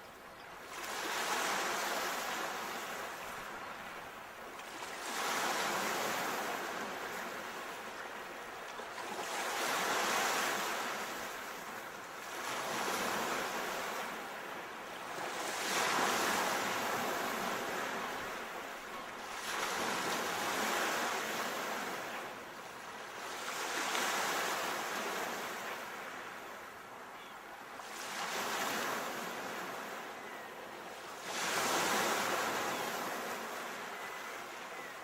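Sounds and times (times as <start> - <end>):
sea waves surging and ebbing: 0.6 - 26.9.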